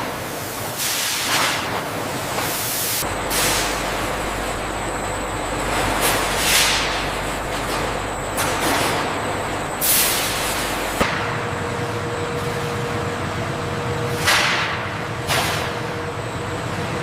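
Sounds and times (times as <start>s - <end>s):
production-line machinery running: 0.0s - 17.0s
steady hum tone: 1.9s - 17.0s
compressed air hissing: 9.2s - 11.0s.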